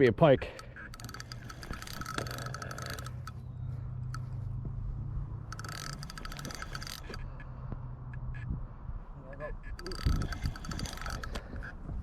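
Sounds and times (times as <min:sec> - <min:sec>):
fishing reel clicking rapidly: 0:00.4 - 0:03.4, 0:05.5 - 0:07.2, 0:09.8 - 0:11.4.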